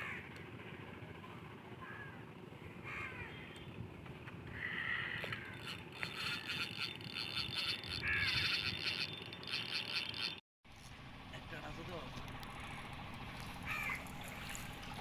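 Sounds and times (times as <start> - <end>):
crows cawing: 0.0 - 0.3, 1.8 - 2.2, 2.8 - 3.5, 4.5 - 9.0, 13.6 - 14.1
rapid rattling: 5.4 - 10.4.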